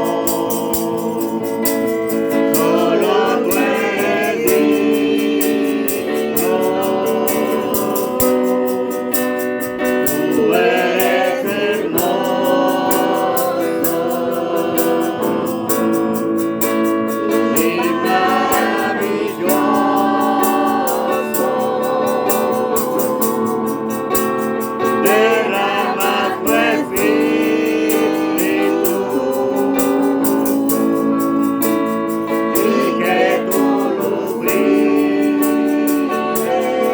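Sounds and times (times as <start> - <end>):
group of voices singing: 0.0 - 36.9
strummed acoustic guitar: 0.0 - 36.9.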